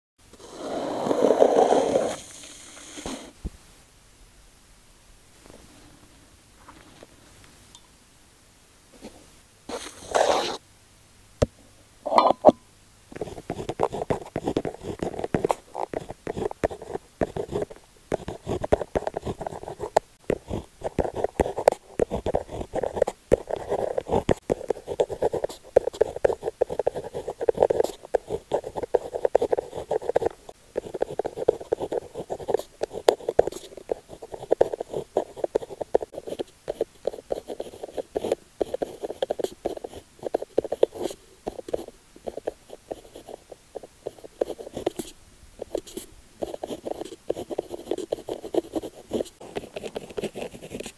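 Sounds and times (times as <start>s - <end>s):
pen scratching on paper: 9.7s - 10.6s, 13.2s - 50.9s.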